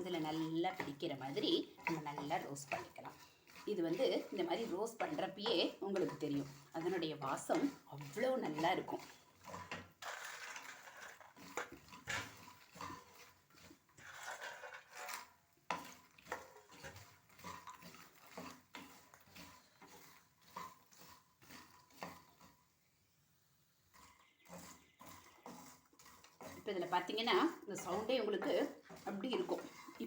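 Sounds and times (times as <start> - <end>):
seeds rattling in metal pan: 0.0 - 22.5
spoon scraping pan: 0.0 - 22.8, 23.8 - 30.0.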